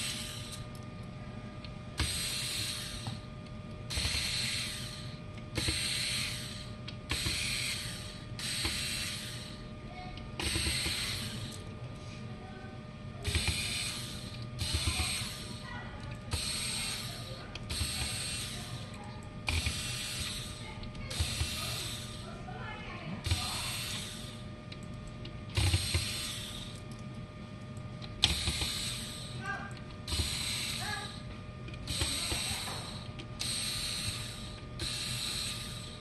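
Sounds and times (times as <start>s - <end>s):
faint electrical hum: 0.0s - 36.0s
repair tool rasping: 10.4s - 11.6s, 13.3s - 15.5s, 16.3s - 18.8s, 19.5s - 22.1s, 25.6s - 26.7s, 28.2s - 29.2s, 30.1s - 30.9s.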